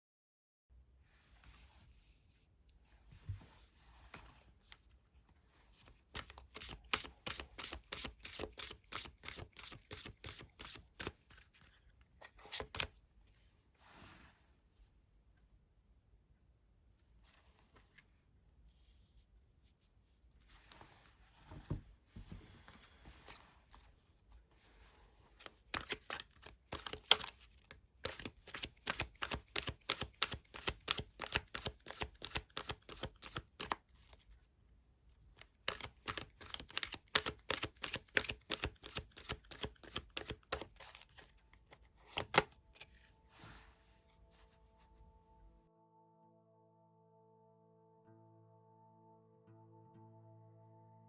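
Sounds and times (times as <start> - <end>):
cards being shuffled: 5.8 - 13.0, 25.4 - 34.3, 35.4 - 44.4.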